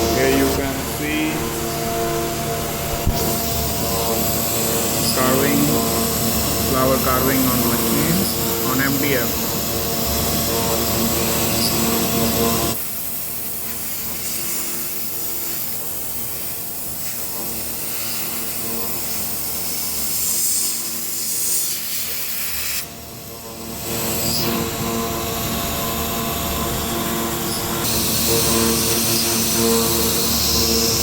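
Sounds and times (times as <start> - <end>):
router spindle whining while cutting: 0.0 - 12.8.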